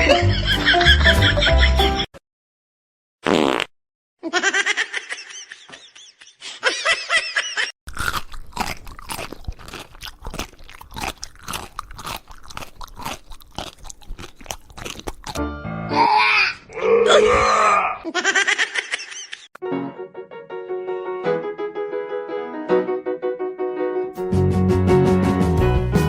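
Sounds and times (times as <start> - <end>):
rapid crunching like chewing: 7.9 - 15.4.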